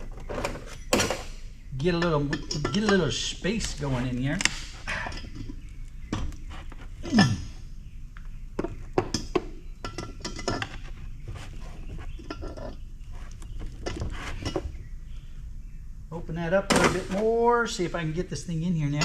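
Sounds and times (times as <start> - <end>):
hand tools clinking on metal: 1.9 - 5.6, 9.1 - 10.8.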